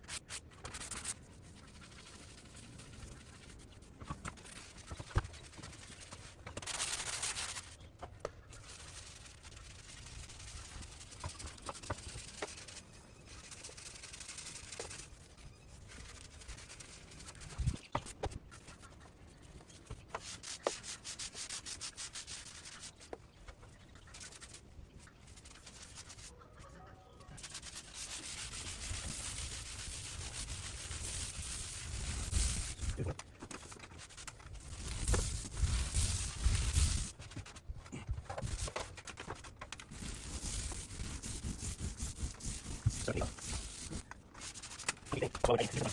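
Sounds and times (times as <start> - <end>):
hand sanding hiss: 27.4 - 33.0, 34.6 - 37.2, 39.9 - 45.9.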